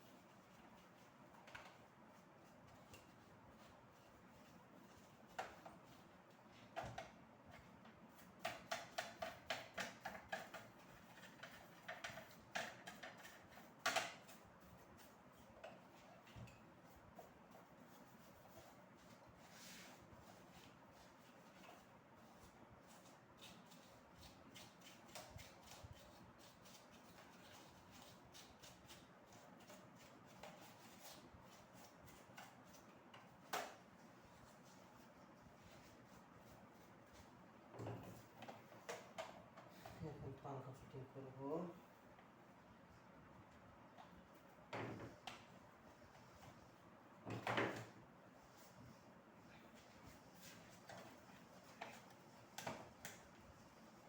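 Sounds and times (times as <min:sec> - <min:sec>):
faint clicks and taps: 0:05.3 - 0:14.4.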